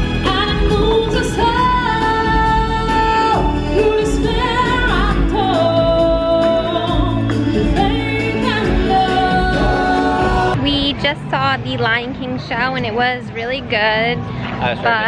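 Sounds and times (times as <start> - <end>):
singers holding long notes: 0.0 - 10.7
musical accompaniment: 0.0 - 15.0.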